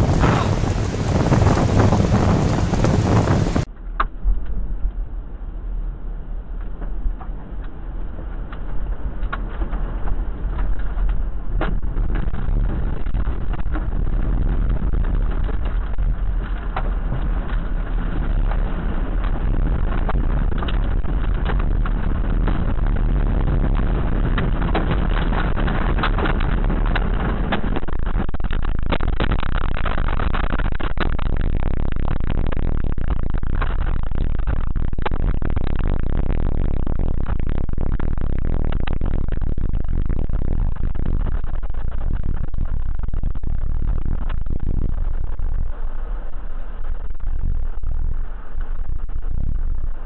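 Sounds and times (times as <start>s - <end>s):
heavy rain and storm: 0.0s - 50.0s
wind buffeting microphone: 0.0s - 50.0s
sharp clicks: 24.3s - 45.6s.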